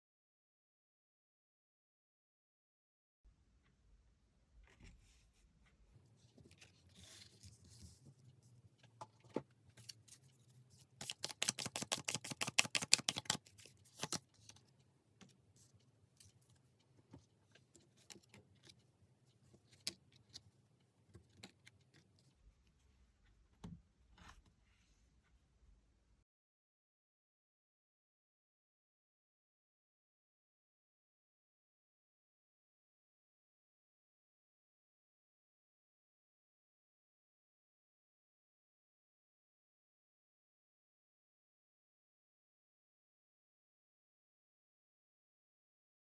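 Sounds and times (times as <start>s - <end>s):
cards tapping and clicking: 11.0s - 14.2s
cards shuffled snapping: 11.0s - 14.3s.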